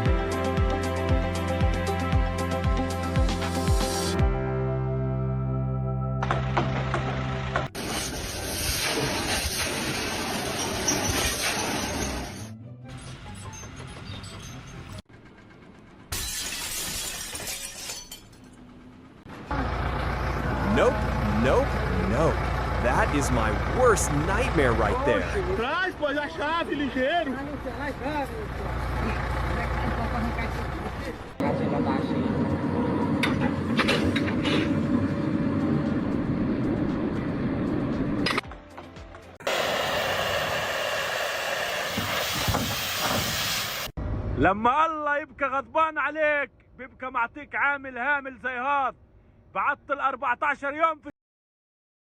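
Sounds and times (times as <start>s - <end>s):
heavy machine running: 15.1s - 16.1s, 18.6s - 25.8s, 27.4s - 38.3s
shattering crash: 16.1s - 18.6s.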